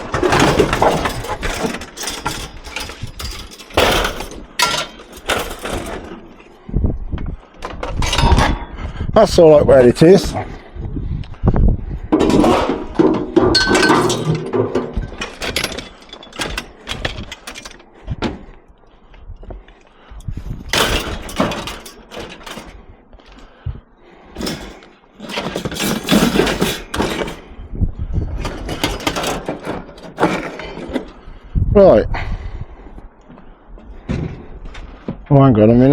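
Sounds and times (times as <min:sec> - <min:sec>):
scrap metal clanking: 0:00.0 - 0:06.4, 0:07.8 - 0:08.8, 0:12.1 - 0:17.9, 0:20.7 - 0:22.8, 0:24.3 - 0:27.6, 0:28.4 - 0:31.2.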